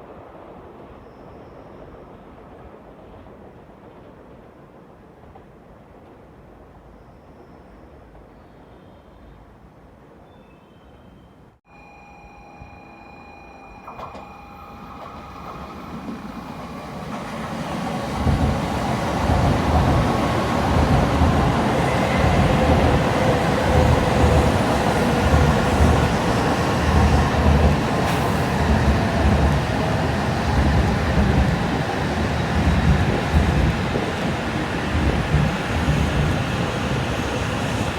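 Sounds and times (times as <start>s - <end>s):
train rushing past: 11.8s - 37.9s
rhythmic thumping of train wheels: 12.3s - 37.9s.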